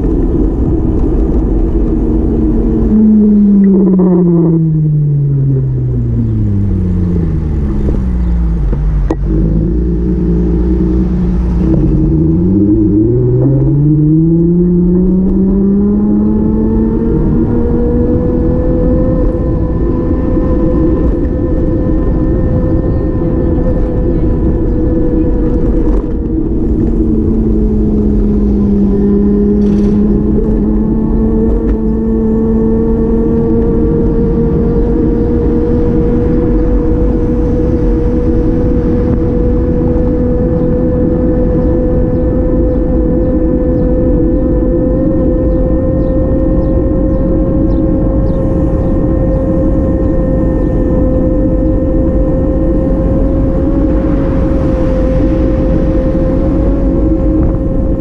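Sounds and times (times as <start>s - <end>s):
vehicle engine running: 0.0s - 58.0s.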